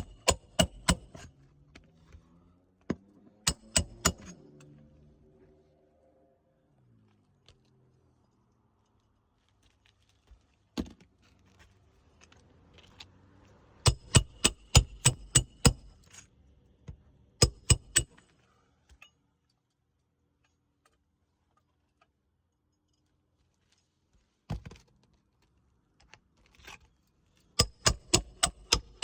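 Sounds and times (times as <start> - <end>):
hammer driving nails metallic: 0.0 - 1.3, 2.9 - 4.4, 13.9 - 16.1, 17.4 - 18.2, 27.6 - 29.0.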